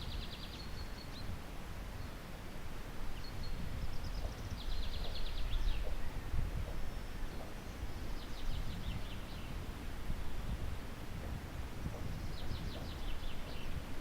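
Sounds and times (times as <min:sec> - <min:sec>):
songbird singing: 0:00.0 - 0:14.0.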